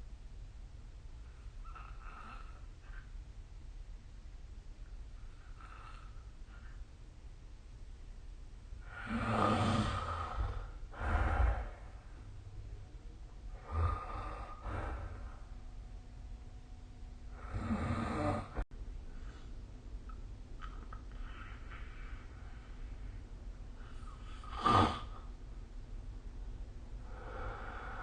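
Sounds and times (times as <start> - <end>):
noisy breaths: 5.1 - 7.2, 8.7 - 16.6, 17.2 - 19.8, 20.7 - 25.4, 26.9 - 28.0
person snoring: 8.8 - 12.2, 13.5 - 15.5, 17.3 - 18.6, 24.0 - 25.3.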